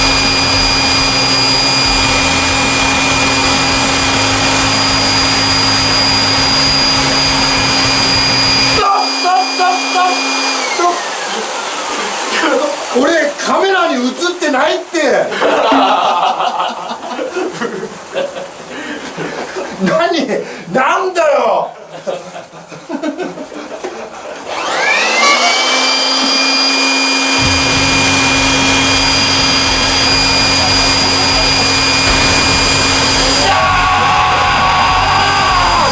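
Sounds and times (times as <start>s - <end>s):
electric air blower whining: 0.0s - 13.0s, 24.4s - 35.9s
low rumble: 27.4s - 35.9s.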